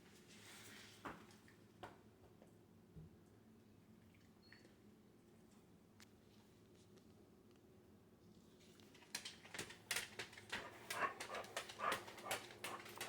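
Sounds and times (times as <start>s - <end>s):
dog whining: 10.5s - 13.0s.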